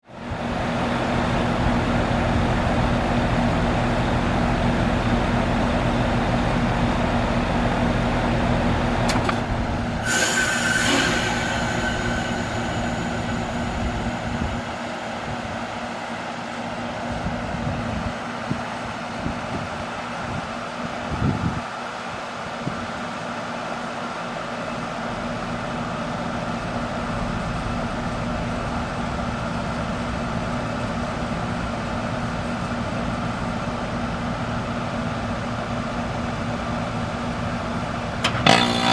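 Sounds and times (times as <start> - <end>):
heat pump low hum: 0.2 - 21.6
hissing whoosh of valve: 10.0 - 15.7.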